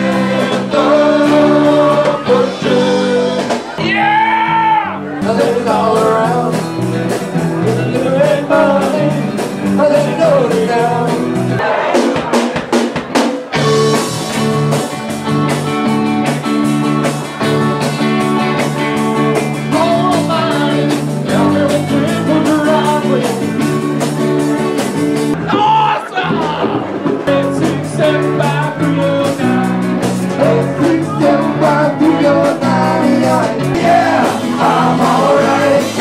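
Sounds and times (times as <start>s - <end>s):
man singing: 0.0s - 11.4s, 19.6s - 23.9s, 25.4s - 36.0s
drum kit: 0.0s - 36.0s
electric guitar: 0.0s - 36.0s.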